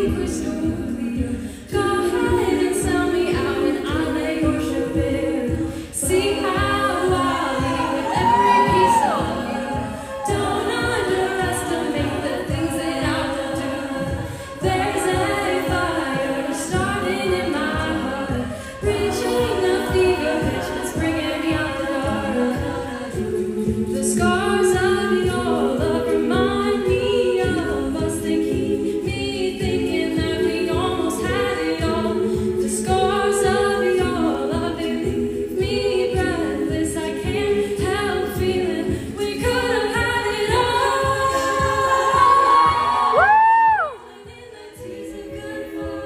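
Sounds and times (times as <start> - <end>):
beatboxed beat: 0.0 - 46.0
group singing in harmony: 0.0 - 46.0.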